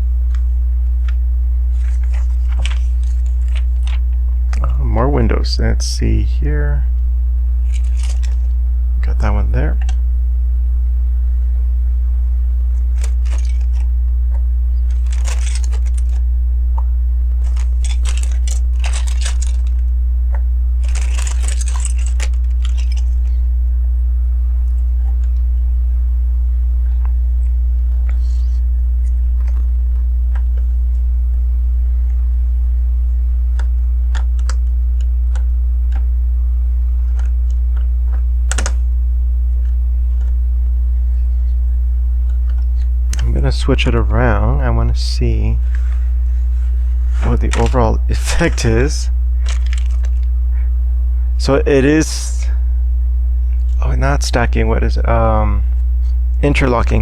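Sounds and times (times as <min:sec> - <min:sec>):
low electrical hum: 0:00.0 - 0:57.0
plastic bricks clicking and rattling: 0:12.9 - 0:13.8, 0:14.9 - 0:16.2, 0:17.4 - 0:19.8, 0:20.8 - 0:23.1, 0:49.4 - 0:50.2.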